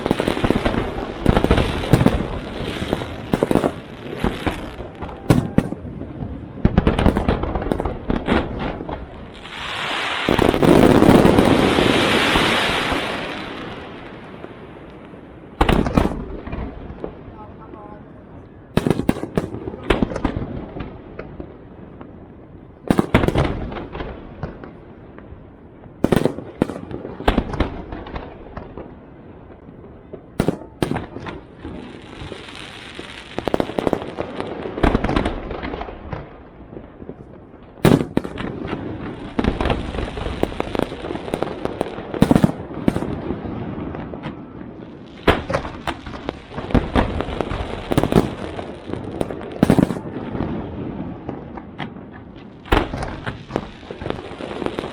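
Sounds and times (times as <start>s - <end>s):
firework shells bursting: 0.0s - 5.8s, 37.8s - 43.2s, 45.2s - 50.0s
firework crackling: 0.0s - 18.0s, 18.7s - 25.2s, 26.0s - 29.1s, 30.1s - 54.9s.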